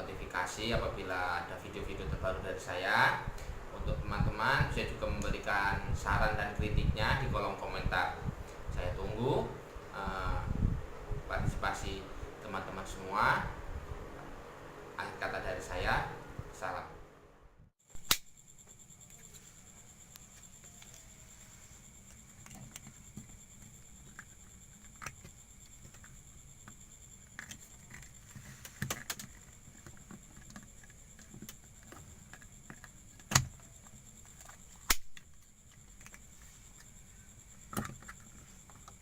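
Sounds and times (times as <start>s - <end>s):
steady high hiss: 17.8s - 27.3s.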